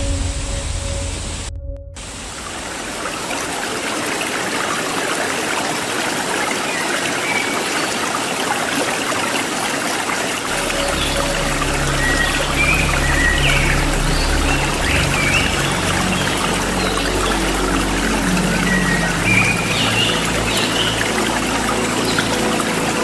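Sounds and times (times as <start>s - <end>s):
low steady drone: 0.0s - 3.7s, 10.5s - 23.0s
waterfall rushing: 2.0s - 23.0s.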